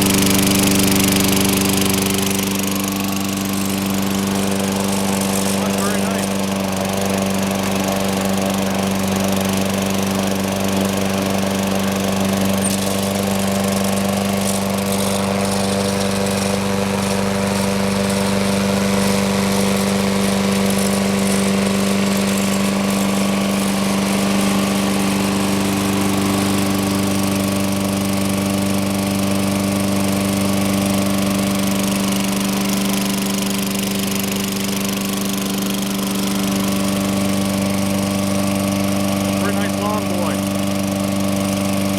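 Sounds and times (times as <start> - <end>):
lawn mower engine running: 0.0 - 41.9.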